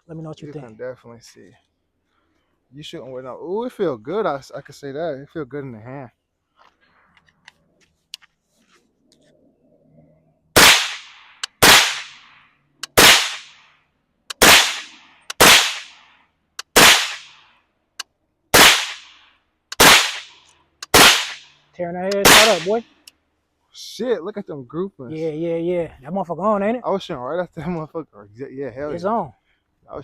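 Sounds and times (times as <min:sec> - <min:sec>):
suppressed rifle shots: 0:10.6 - 0:13.6, 0:14.3 - 0:16.0, 0:16.7 - 0:17.4, 0:18.6 - 0:19.2, 0:19.8 - 0:21.4, 0:22.2 - 0:22.8.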